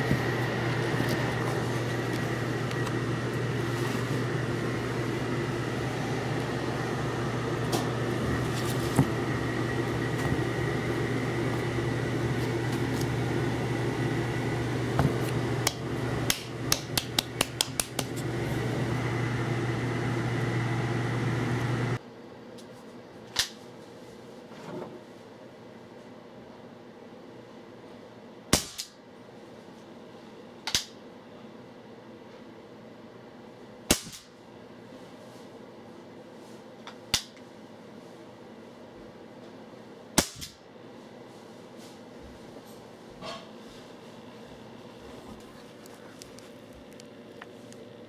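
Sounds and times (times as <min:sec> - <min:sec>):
machine hum: 0:00.0 - 0:22.3
sharp snap: 0:28.5 - 0:29.0, 0:30.7 - 0:31.0, 0:33.9 - 0:34.3, 0:37.1 - 0:37.4, 0:40.2 - 0:40.6.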